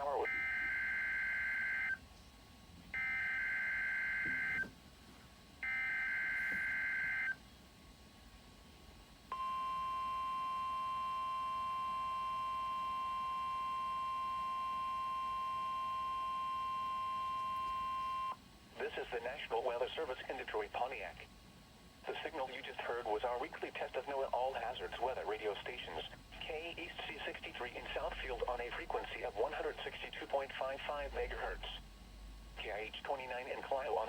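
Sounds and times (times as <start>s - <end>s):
steady warning alarm tone: 0.0s - 2.0s, 3.0s - 4.7s, 5.6s - 7.4s, 9.3s - 18.4s.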